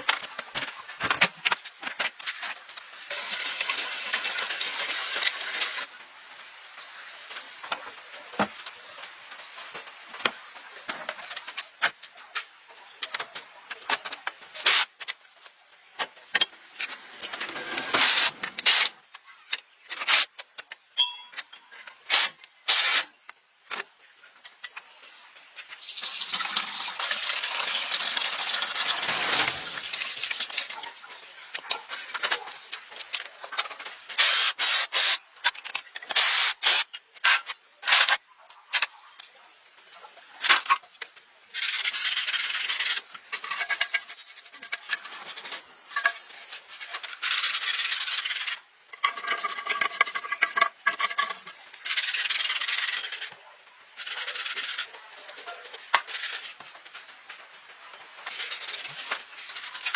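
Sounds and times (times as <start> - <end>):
rubbing and scraping strokes: 41.6 - 53.4.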